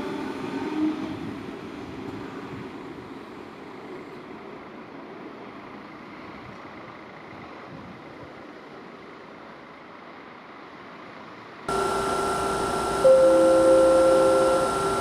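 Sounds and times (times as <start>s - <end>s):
electric train whining: 11.7s - 15.0s
faint steady noise: 11.7s - 15.0s.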